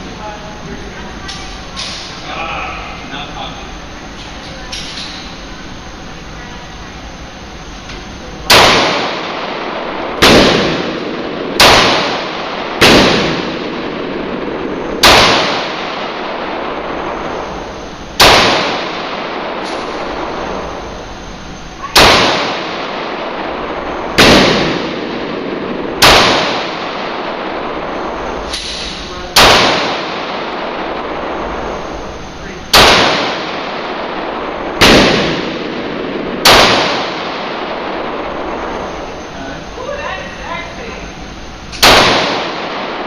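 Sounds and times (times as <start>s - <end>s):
pistol shots with echo: 8.5s - 16.5s, 18.2s - 20.2s, 21.9s - 23.4s, 24.2s - 27.5s, 28.5s - 30.9s, 32.7s - 34.2s, 34.8s - 38.0s, 41.8s - 43.0s.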